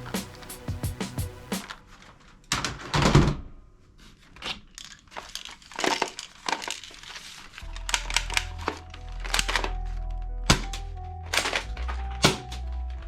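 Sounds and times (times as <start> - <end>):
plastic packaging crinkling: 4.7 - 10.1.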